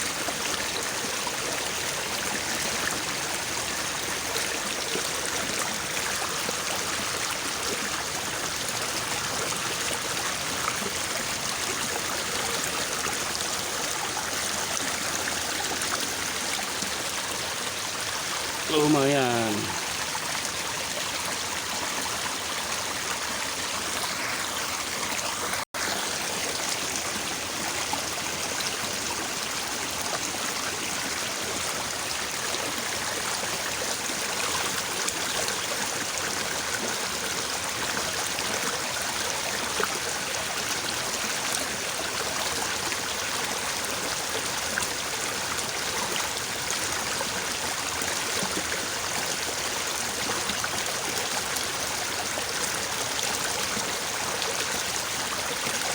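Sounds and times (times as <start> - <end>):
stream babbling: 0.0 - 55.9.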